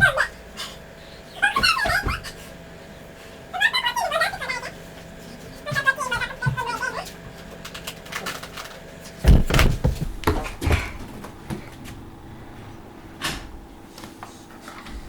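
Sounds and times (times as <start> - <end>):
faint steady hum: 0.0 - 15.0
knocks and bumps: 9.2 - 13.6.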